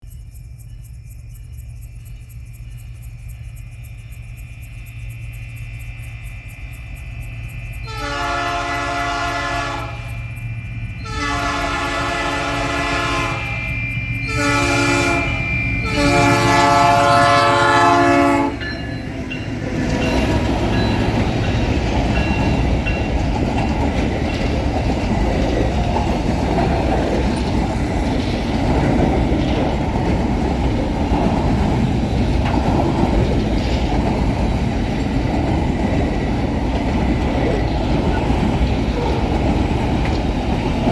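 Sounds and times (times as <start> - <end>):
train wheels rumbling and clattering: 0.1 - 40.9
locomotive horn blasts: 7.9 - 10.2, 11.0 - 18.8.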